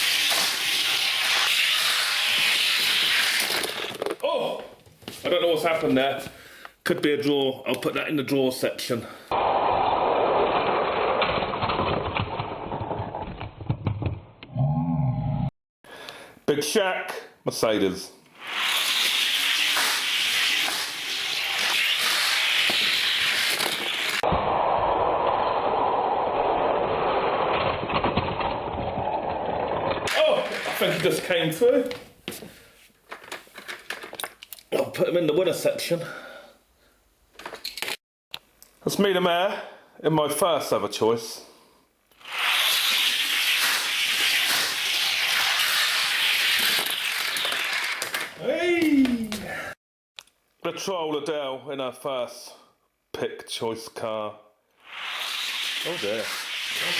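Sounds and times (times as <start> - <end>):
toy car wheels rolling on track: 0.0 - 4.2, 18.4 - 24.2, 42.2 - 48.4, 54.9 - 56.9.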